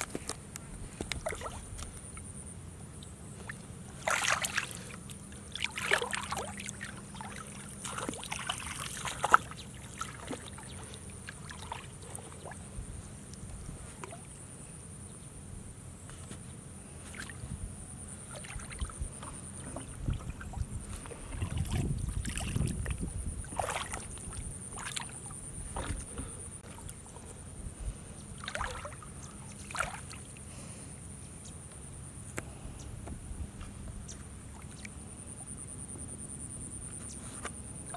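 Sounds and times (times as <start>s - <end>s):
water splashing and sloshing: 0.0s - 14.5s, 16.2s - 30.9s, 33.0s - 35.8s
steady high-pitched hum: 0.0s - 37.9s.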